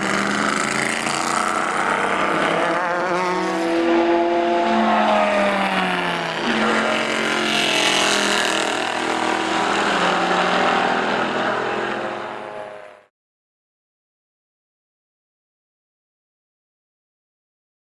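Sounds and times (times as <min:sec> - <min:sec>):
racing car engine running: 0:00.0 - 0:13.1.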